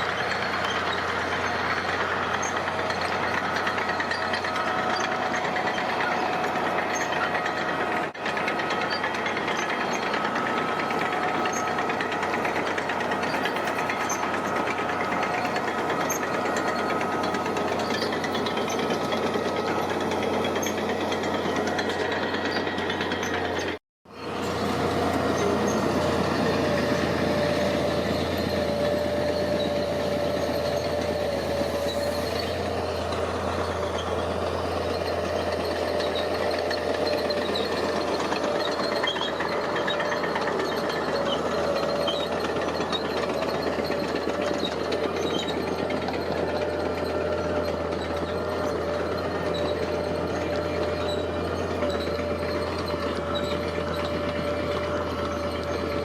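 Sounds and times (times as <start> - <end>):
diesel machinery running: 0.0 - 56.0.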